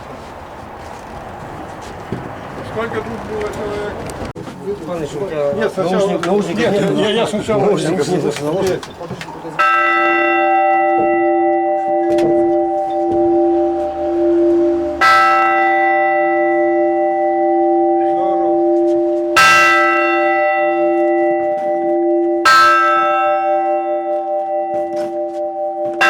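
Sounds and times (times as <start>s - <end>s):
church bell ringing: 5.9s - 26.0s
steady low hum: 10.6s - 19.4s.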